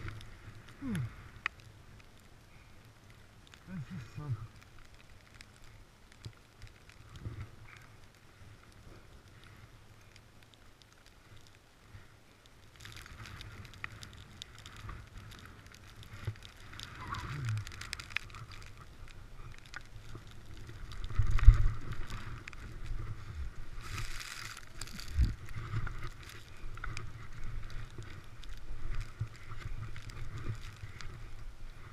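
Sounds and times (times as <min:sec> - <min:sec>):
skis scraping over snow: 0:11.1 - 0:31.9
wind on microphone: 0:24.8 - 0:31.9.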